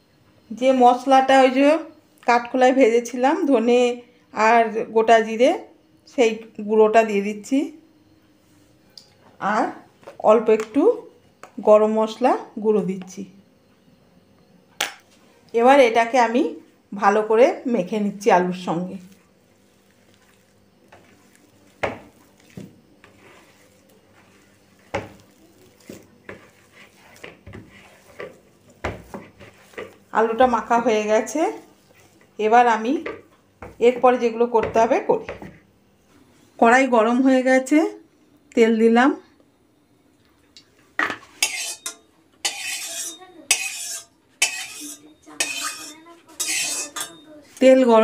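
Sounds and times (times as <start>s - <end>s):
hand mashing potato: 20.0s - 30.6s, 41.4s - 47.2s
metal utensil scraping wok: 22.3s - 32.2s, 41.2s - 47.8s.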